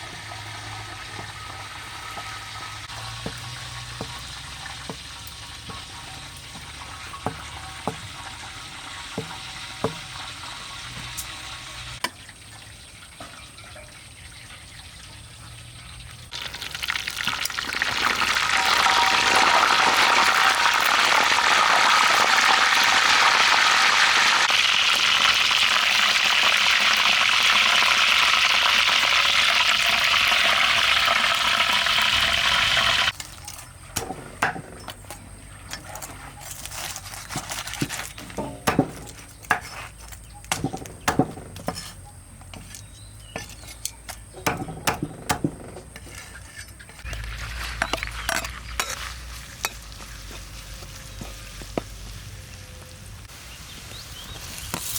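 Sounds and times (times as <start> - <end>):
food sizzling in oil: 0.0 - 15.6, 16.3 - 34.5, 47.0 - 52.3, 53.3 - 54.9.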